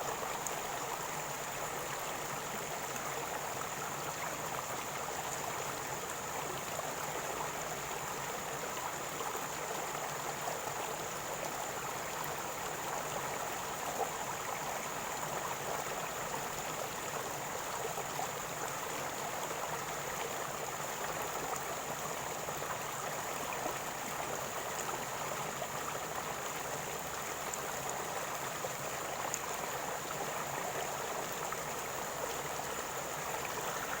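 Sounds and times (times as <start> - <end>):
river water gurgling: 0.0 - 34.0.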